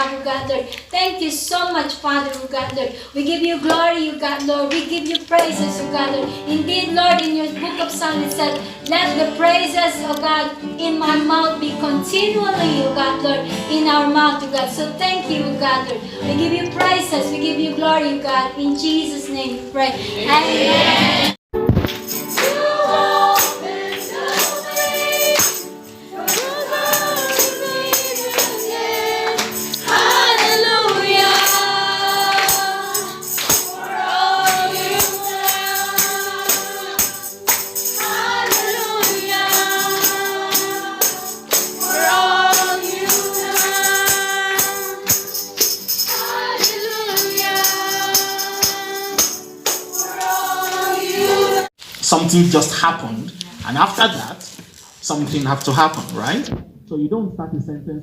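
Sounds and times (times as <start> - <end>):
group singing worship song: 20.0 - 21.4, 22.1 - 51.7
tambourine keeping time: 21.9 - 51.7.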